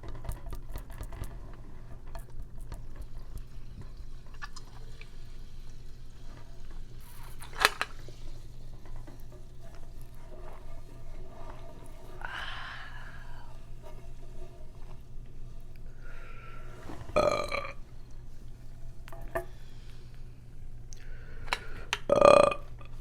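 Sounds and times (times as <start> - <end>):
steady low hum: 0.0 - 23.0
wet mouth eating noises: 4.3 - 5.1.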